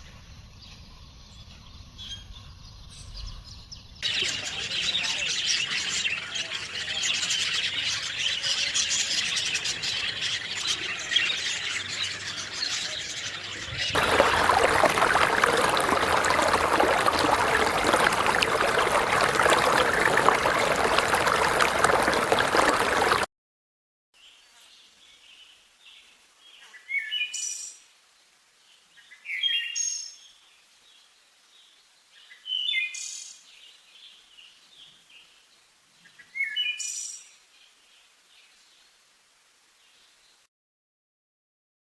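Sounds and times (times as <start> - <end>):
chorus of birds chirping: 0.0 - 23.2.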